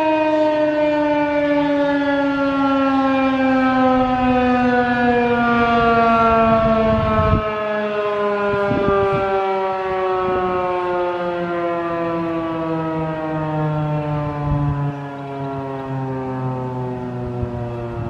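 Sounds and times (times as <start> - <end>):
siren winding down: 0.0 - 18.0.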